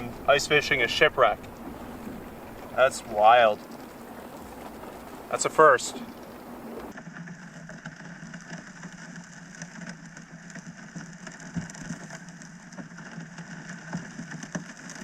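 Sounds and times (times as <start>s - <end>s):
steady low hum: 0.0s - 6.9s
faint ticks: 1.2s - 7.0s.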